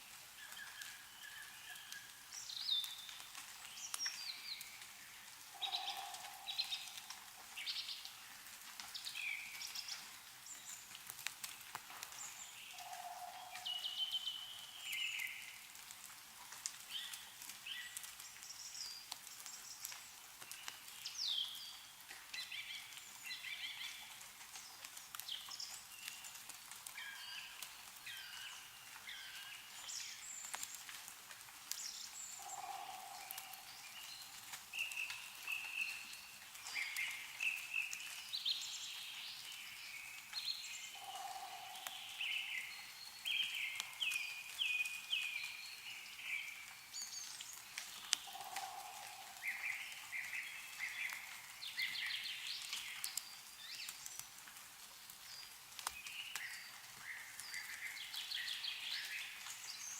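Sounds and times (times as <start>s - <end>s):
water dripping from trees: 0.0s - 59.9s
songbirds chirping and trilling: 0.4s - 11.0s, 11.7s - 15.7s, 31.6s - 54.2s.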